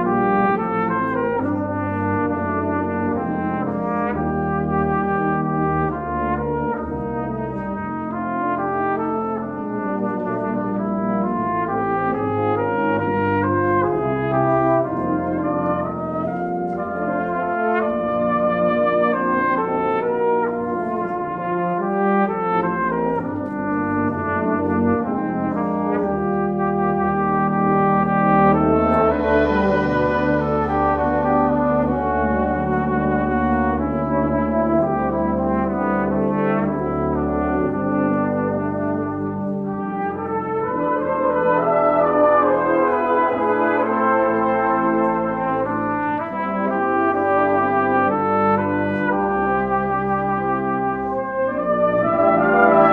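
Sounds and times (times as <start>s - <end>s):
cornet playing legato melody: 0.0s - 52.9s
low sustained accompaniment notes: 25.7s - 35.6s, 51.9s - 52.9s.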